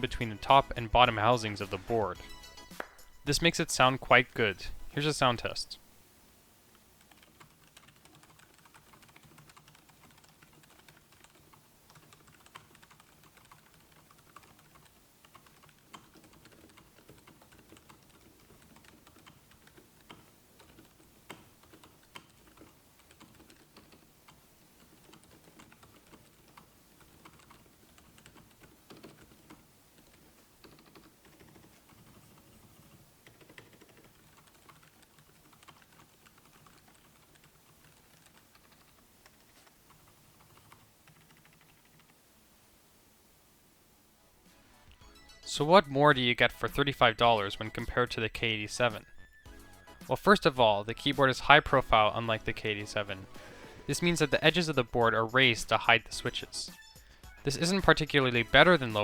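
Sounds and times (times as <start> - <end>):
mechanical keyboard typing: 7.0 - 42.2.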